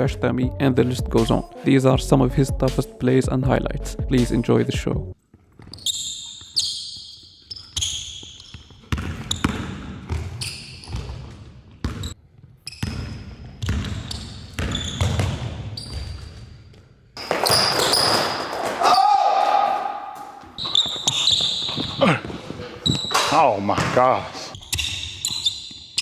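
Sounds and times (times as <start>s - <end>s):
shoe squeaks: 5.5s - 9.6s, 10.2s - 11.2s, 12.0s - 18.6s, 20.3s - 26.0s
basketball bouncing on hard court: 7.8s - 16.3s, 17.2s - 18.8s, 20.5s - 25.8s.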